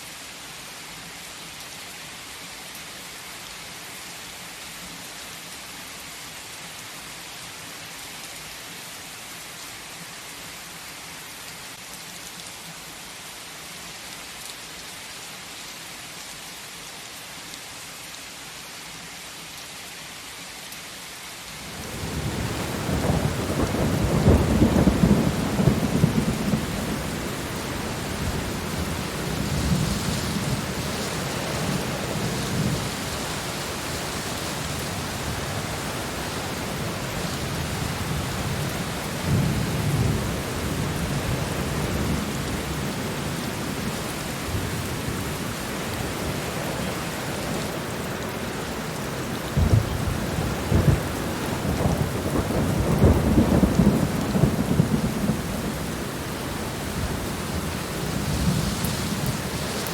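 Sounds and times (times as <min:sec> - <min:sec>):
heavy rain: 0:00.0 - 0:59.9
rolling thunder: 0:21.8 - 0:38.6, 0:49.6 - 0:59.8.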